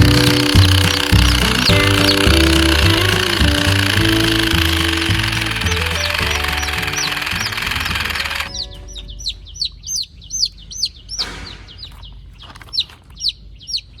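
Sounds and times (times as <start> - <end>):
rattling machine-like racket: 0.0 - 8.6
music tones: 0.0 - 9.5
chicks peeping: 0.0 - 14.0.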